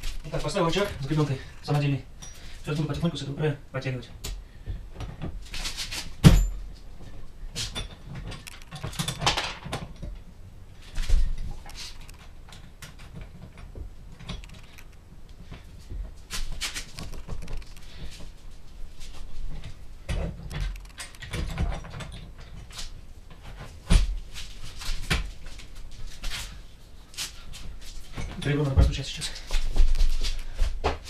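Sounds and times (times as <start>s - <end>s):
metal clicks and knocks: 7.7s - 10.3s, 12.0s - 15.0s, 20.1s - 22.7s.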